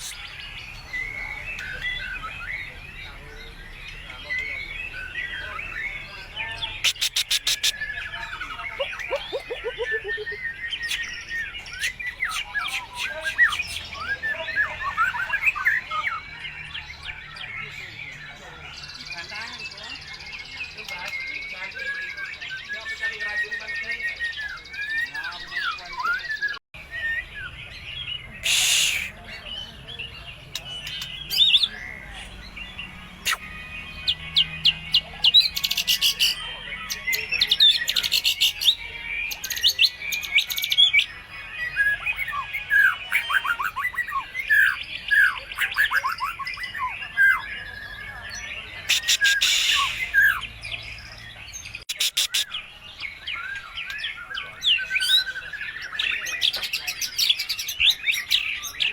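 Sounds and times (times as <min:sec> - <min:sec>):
songbird singing whistles and trills: 0:00.0 - 0:18.0, 0:18.8 - 0:29.7, 0:30.5 - 0:58.9
harsh scratchy bird notes: 0:06.8 - 0:08.0, 0:09.0 - 0:14.0, 0:28.4 - 0:29.2, 0:48.8 - 0:50.4.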